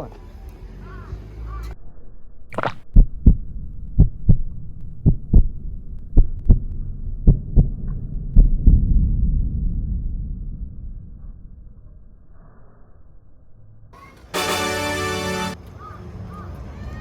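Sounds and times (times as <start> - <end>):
low rumble: 1.7 - 13.9
heartbeat thumps: 2.6 - 9.0.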